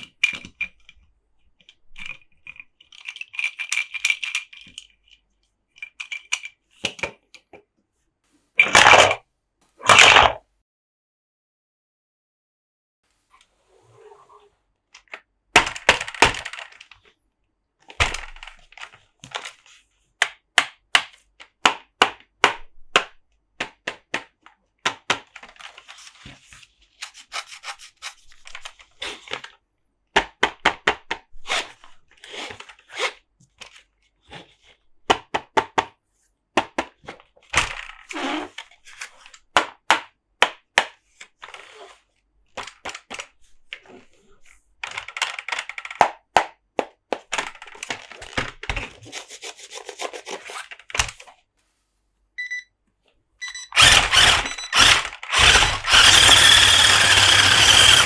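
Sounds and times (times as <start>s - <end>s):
tapping on plastic toy trucks: 15.1s - 16.8s, 20.2s - 25.6s, 30.2s - 31.3s, 35.1s - 36.0s, 36.6s - 38.0s, 39.4s - 41.0s, 44.8s - 48.8s, 53.8s - 58.0s
scratchy rubbing on plastic: 26.0s - 29.3s, 48.8s - 50.8s.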